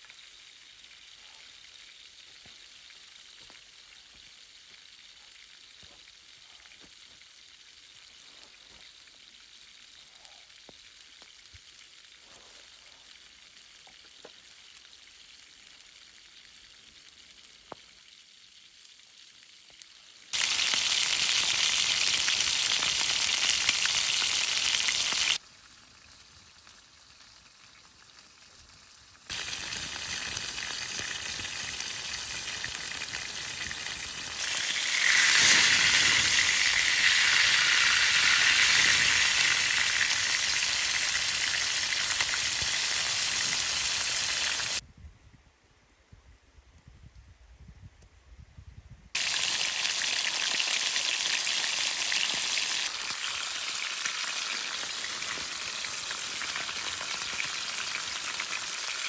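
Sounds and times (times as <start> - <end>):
sizzling hiss: 18.9 - 44.8, 49.2 - 59.0.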